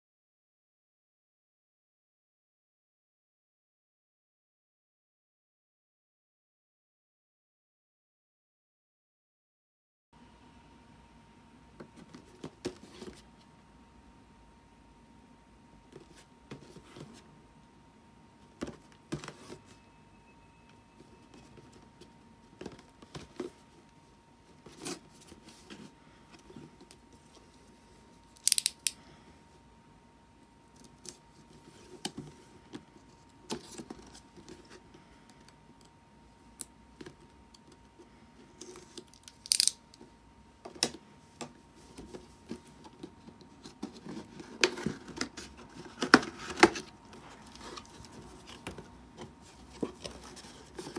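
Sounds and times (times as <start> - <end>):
faint steady hum: 10.2 - 50.9
cardboard and plastic packaging rustling: 11.8 - 13.5, 18.4 - 19.9, 21.0 - 28.6, 30.8 - 35.0, 40.7 - 50.9.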